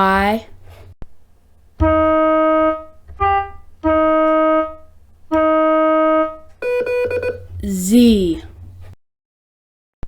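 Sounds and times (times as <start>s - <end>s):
morse code keyboard tones: 6.6s - 7.5s.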